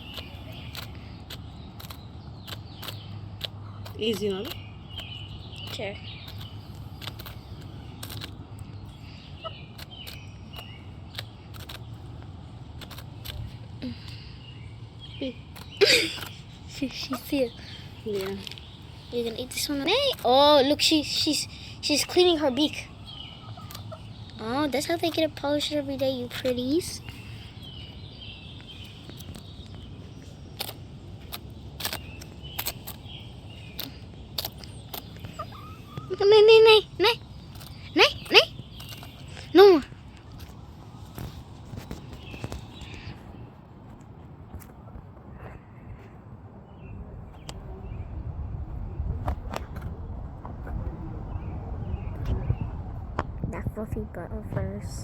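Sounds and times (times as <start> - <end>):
hen beak tapping: 0.0 - 14.2
steady low hum: 0.0 - 55.0
chickens calling: 22.0 - 24.8, 33.8 - 39.8.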